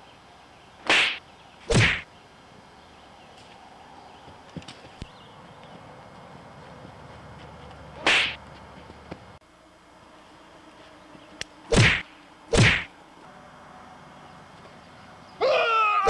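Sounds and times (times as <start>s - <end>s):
punch whacks: 0.8s - 2.0s, 8.0s - 8.4s, 11.7s - 12.9s.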